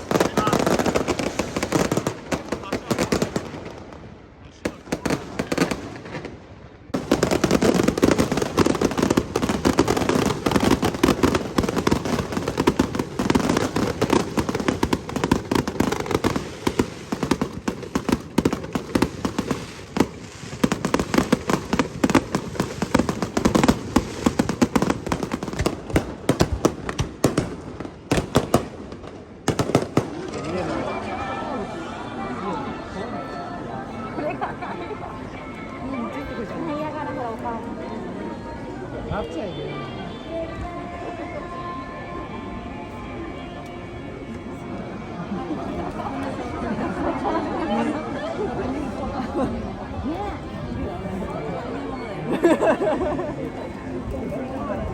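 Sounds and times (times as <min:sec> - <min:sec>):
fireworks bursts and crackles: 0:00.0 - 0:31.7.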